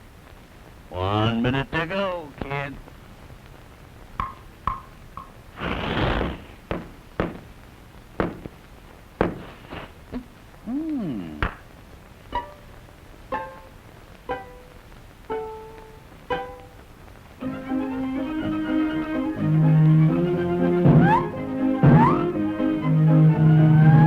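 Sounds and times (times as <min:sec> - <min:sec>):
sharp knocks: 0:04.2 - 0:05.4, 0:06.7 - 0:07.5, 0:08.2 - 0:08.6, 0:09.2 - 0:09.5
plucked string notes: 0:12.3 - 0:16.8, 0:17.4 - 0:24.0.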